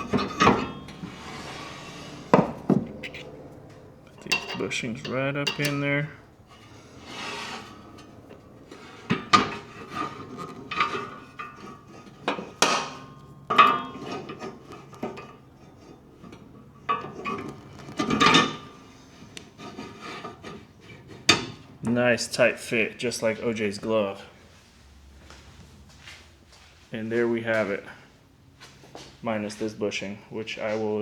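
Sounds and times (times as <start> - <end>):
ringing metal knocks: 0.0 - 7.0, 7.6 - 18.8
metal clinks scrapes and taps: 0.0 - 21.6.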